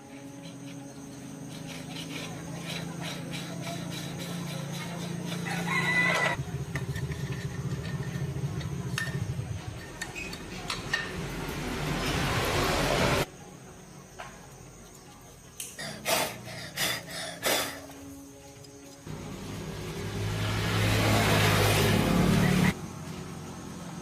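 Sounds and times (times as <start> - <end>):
rooster crowing: 5.3 - 6.4
workshop clicks and taps: 9.8 - 11.3
rushing noise: 11.2 - 13.3.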